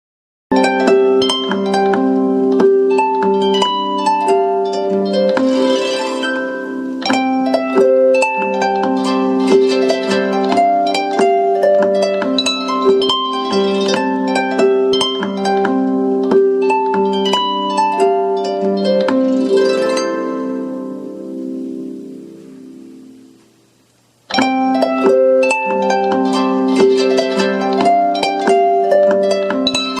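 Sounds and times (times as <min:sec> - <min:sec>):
harp-like alarm melody: 0:00.5 - 0:21.8
shimmering wash: 0:05.3 - 0:07.8.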